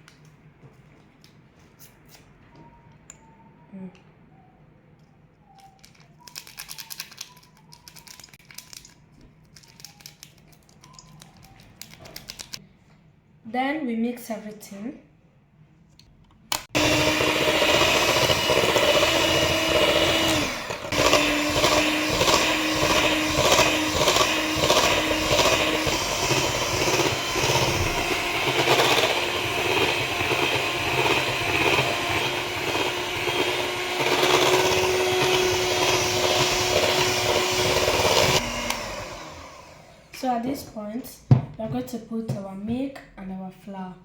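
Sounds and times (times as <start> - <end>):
electric mixer whine: 16.6 - 40.2.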